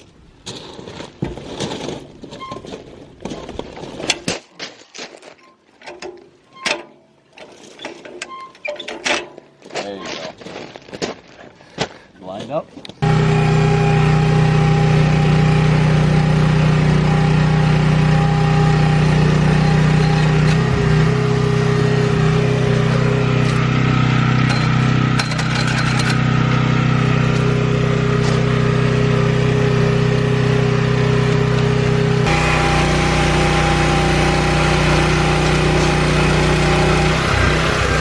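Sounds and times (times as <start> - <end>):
post-hole auger engine running: 13.0 - 38.0.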